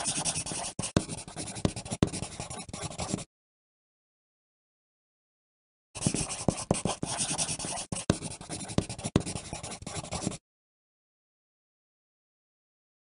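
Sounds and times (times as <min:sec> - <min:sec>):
pencil writing on paper: 0:00.0 - 0:03.3, 0:06.0 - 0:10.4.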